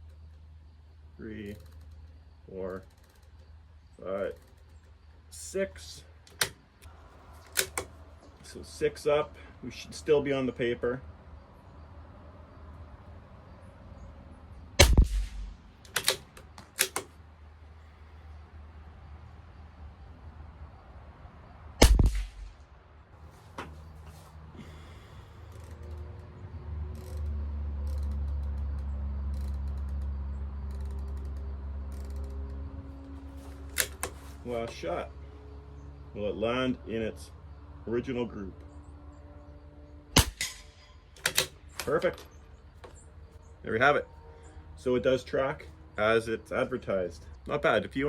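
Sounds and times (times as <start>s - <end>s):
sharp metallic clicks: 0.0s - 9.1s, 14.7s - 17.3s, 21.8s - 22.8s, 25.5s - 32.7s, 33.5s - 35.0s, 40.1s - 43.4s
scope turret clicking: 6.2s - 8.0s, 14.8s - 17.2s, 33.7s - 34.2s, 40.2s - 42.0s
steady low rumble: 14.6s - 15.9s, 21.8s - 22.9s
rifle shot with echo: 14.8s - 16.1s, 21.8s - 22.6s, 40.2s - 40.9s.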